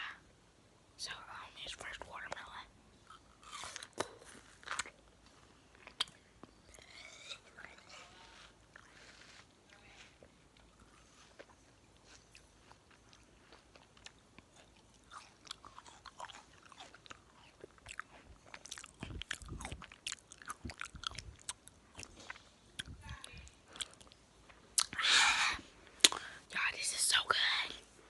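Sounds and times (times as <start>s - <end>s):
person chewing watermelon: 3.0s - 25.1s, 25.9s - 26.3s.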